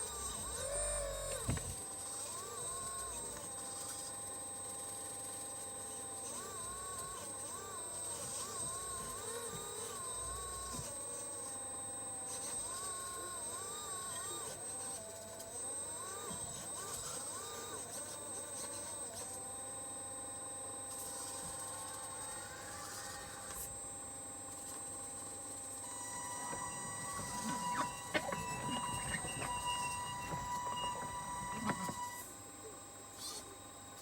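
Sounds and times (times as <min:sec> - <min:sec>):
small electric motors whining: 0:00.0 - 0:34.0.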